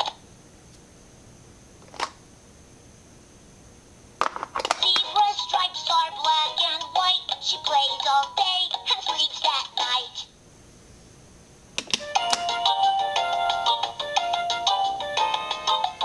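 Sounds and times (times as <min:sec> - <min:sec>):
toy electronic voice singing: 0:04.8 - 0:10.3.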